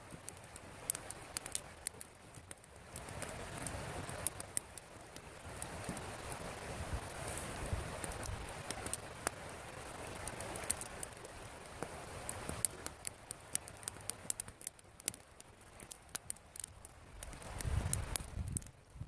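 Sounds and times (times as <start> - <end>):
campfire crackling: 0.0 - 19.0
faint hiss: 0.0 - 19.0.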